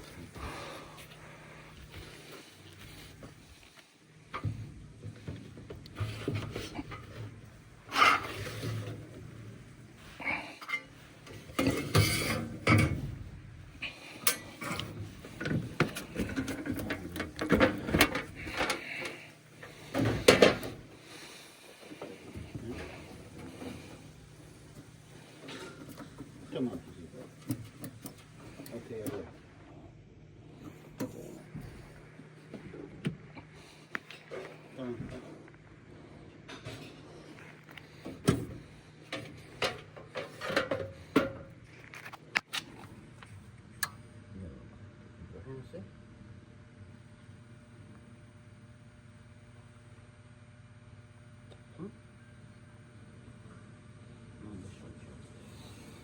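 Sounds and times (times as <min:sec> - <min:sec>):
knocks and clatter of handling: 0:10.6 - 0:13.3, 0:14.1 - 0:24.1, 0:36.5 - 0:42.3.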